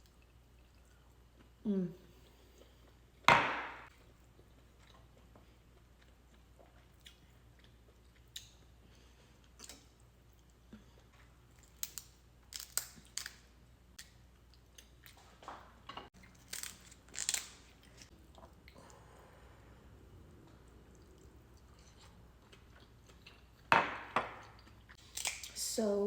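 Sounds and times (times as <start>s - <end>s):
chewing and mouth sounds: 0.0s - 1.6s, 3.9s - 13.4s, 16.2s - 19.0s, 20.4s - 23.7s, 24.4s - 25.6s
crab shell clicks and crackles: 11.6s - 14.2s, 16.2s - 18.1s, 24.9s - 25.6s.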